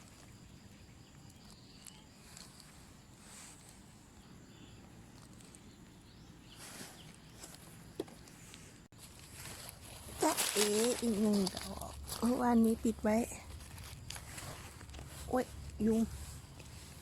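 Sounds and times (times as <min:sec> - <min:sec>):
high insect hum: 0:00.0 - 0:17.0
leaf litter rustling underfoot: 0:09.0 - 0:17.0.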